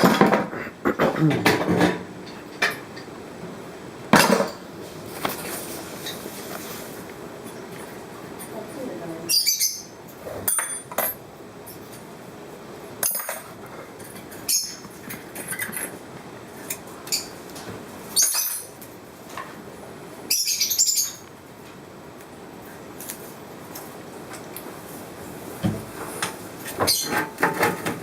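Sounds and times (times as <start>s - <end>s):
glass pieces clinking and scraping: 18.2s - 18.7s.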